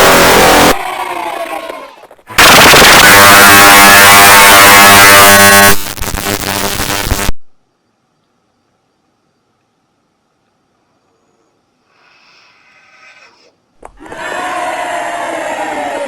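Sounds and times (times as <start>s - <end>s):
loud distorted blast: 0.0s - 0.8s, 2.4s - 7.4s
distorted kids cheering: 0.0s - 5.8s, 14.0s - 16.0s.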